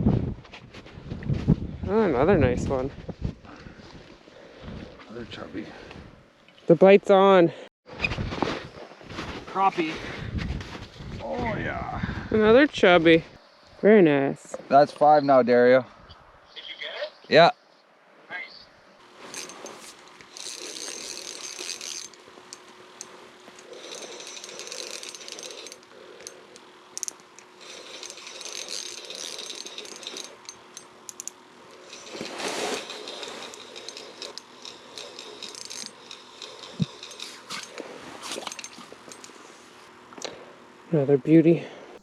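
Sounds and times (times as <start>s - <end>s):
fishing reel ratcheting: 19.2s - 39.5s.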